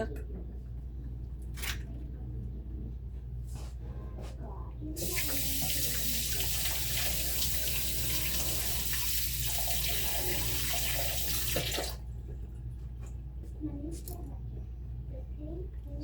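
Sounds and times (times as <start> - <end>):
tap water running into sink: 5.0 - 12.0.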